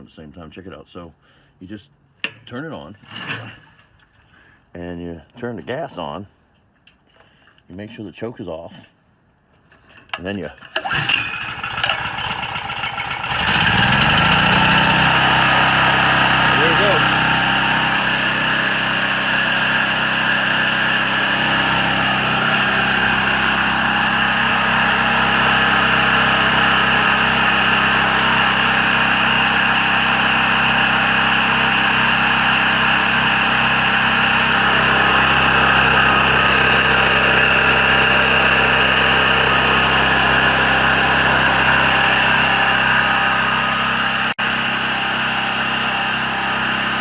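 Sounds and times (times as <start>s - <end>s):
generator engine running: 10.7s - 47.0s.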